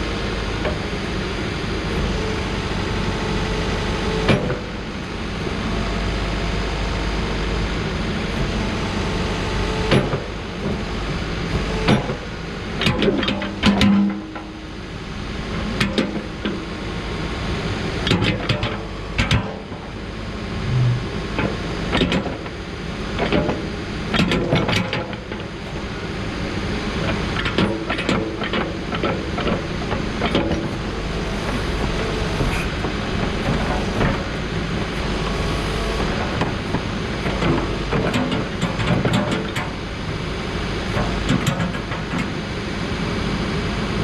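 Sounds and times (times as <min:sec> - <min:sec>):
diesel engine running: 0:00.0 - 0:12.8, 0:18.9 - 0:21.9, 0:25.7 - 0:39.1.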